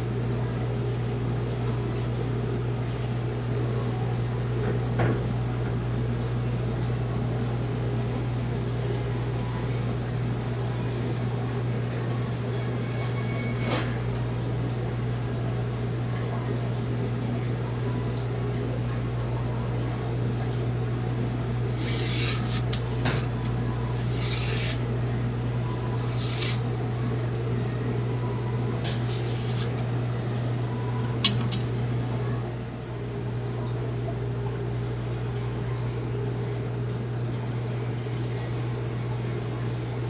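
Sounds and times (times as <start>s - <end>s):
knife blade scraping: 21.7s - 23.3s, 24.0s - 24.9s, 26.0s - 26.9s, 28.8s - 29.9s.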